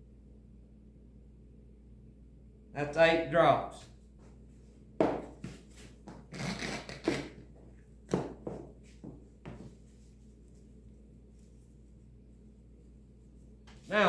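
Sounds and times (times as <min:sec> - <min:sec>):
tools knocking on a hard surface: 0:05.0 - 0:05.6, 0:08.1 - 0:09.7.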